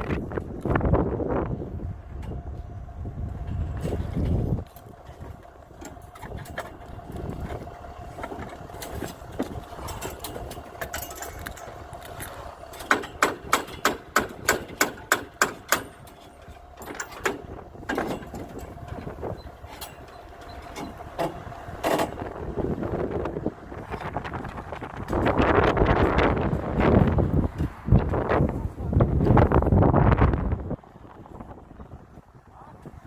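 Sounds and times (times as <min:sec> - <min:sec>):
steady engine hum: 0:00.0 - 0:33.0
hammer striking formwork: 0:12.8 - 0:16.3.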